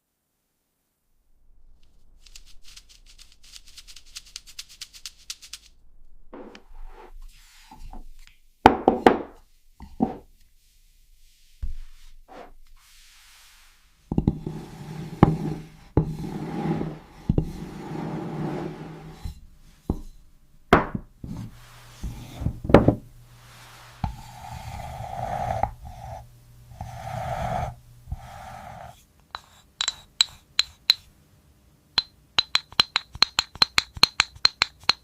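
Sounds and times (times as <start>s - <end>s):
rubbing and scraping: 1.8s - 5.8s, 9.8s - 20.2s
knocks and taps on objects: 32.0s - 35.0s.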